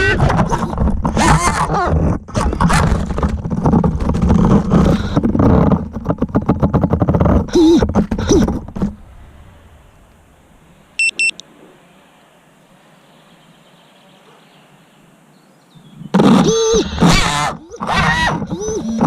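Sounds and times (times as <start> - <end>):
background hiss: 8.9 - 17.0
short high electronic beeps: 11.0 - 11.4.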